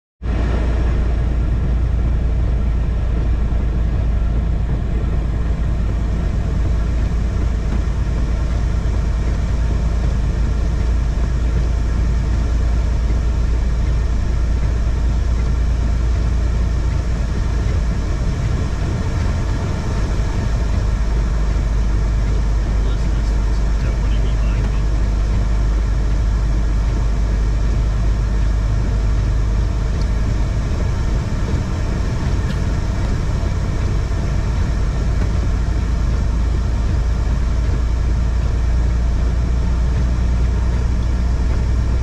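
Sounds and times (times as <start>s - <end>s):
heavy truck engine drone: 0.2s - 42.0s.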